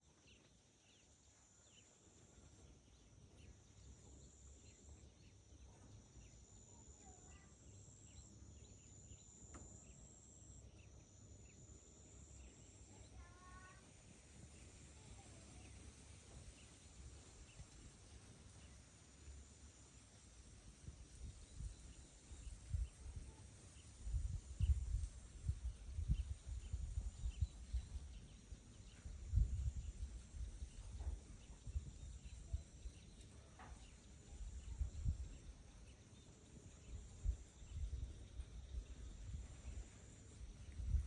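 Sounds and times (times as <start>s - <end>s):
insect trill: 0.8s - 15.9s.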